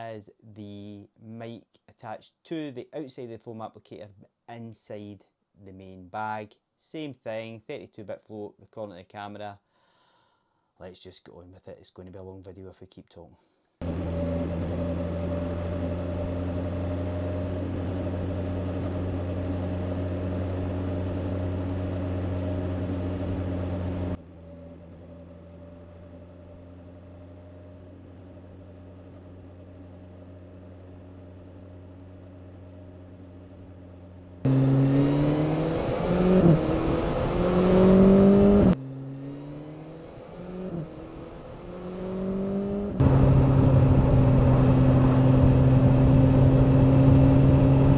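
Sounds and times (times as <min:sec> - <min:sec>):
motorcycle engine: 0:13.8 - 0:47.9.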